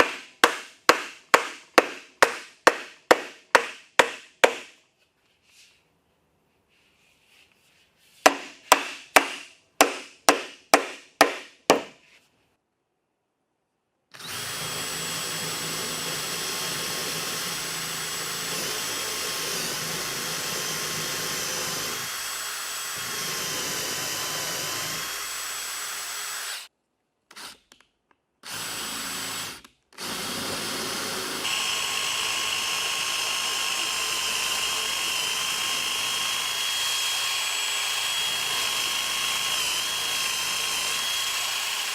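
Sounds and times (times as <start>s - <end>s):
sharp knocks: 0.0s - 4.8s, 8.2s - 12.0s
electric power tool whining: 14.2s - 26.7s, 28.5s - 41.9s.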